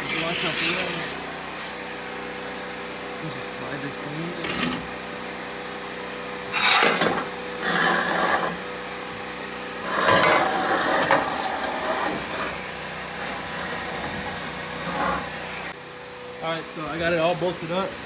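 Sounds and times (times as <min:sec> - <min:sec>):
exhaust pipe scraping metal: 0:00.0 - 0:01.8, 0:03.7 - 0:05.1, 0:06.4 - 0:08.8, 0:09.6 - 0:15.7.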